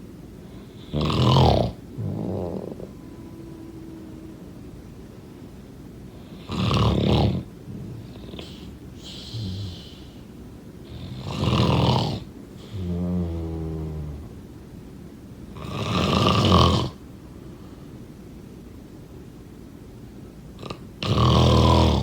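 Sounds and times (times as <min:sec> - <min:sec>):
loud rough snores: 0:00.7 - 0:04.4, 0:06.2 - 0:10.1, 0:10.9 - 0:14.4, 0:15.6 - 0:17.0, 0:20.6 - 0:22.0
low droning breath: 0:01.8 - 0:06.5.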